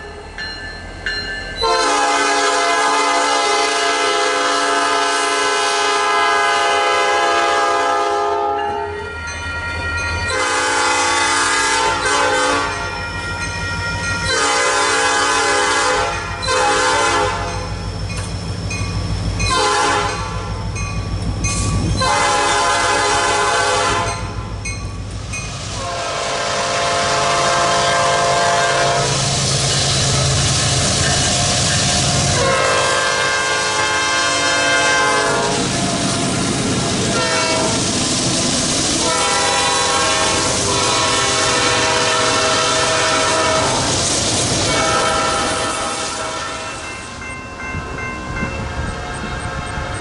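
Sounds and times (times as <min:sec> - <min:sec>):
passing train rumble: 0:00.0 - 0:50.0
locomotive horn blasts: 0:01.6 - 0:13.0, 0:13.7 - 0:17.6, 0:19.5 - 0:20.5, 0:22.0 - 0:24.4, 0:25.7 - 0:29.3, 0:32.2 - 0:35.7, 0:37.0 - 0:37.8, 0:39.0 - 0:43.9, 0:44.6 - 0:46.9, 0:48.6 - 0:50.0.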